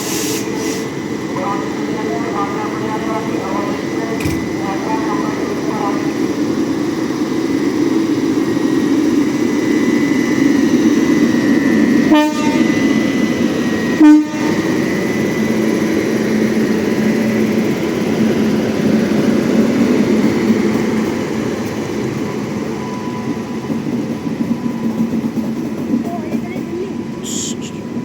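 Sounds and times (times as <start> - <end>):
train rumbling: 0.0 - 28.0
train horn toots: 12.1 - 12.8, 14.0 - 14.7.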